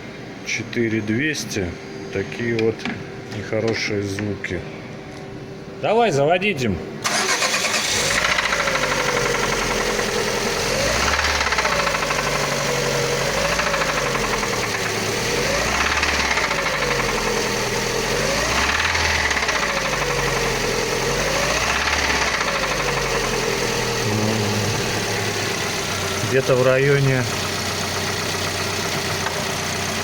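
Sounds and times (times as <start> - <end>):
car engine knocking: 8.2 - 30.0.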